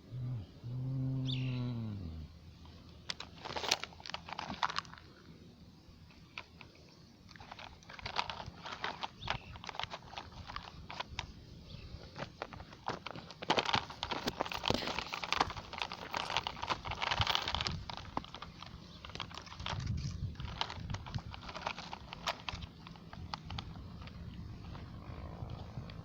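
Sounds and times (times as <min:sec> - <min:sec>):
small rapid clicks and rattles: 0:06.1 - 0:11.3, 0:12.0 - 0:26.0.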